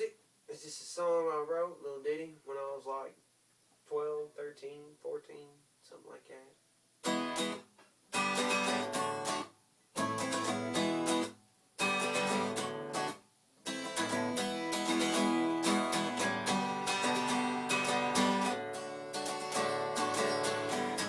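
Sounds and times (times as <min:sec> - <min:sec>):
acoustic guitar strumming chords: 0:07.0 - 0:21.0.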